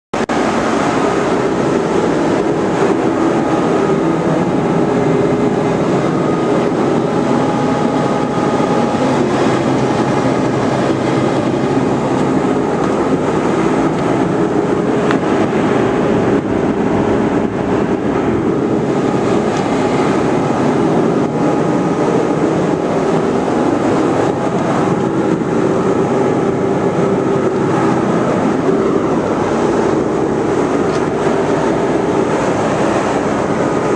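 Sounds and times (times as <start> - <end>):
cooling equipment droning: 0.2 - 33.9.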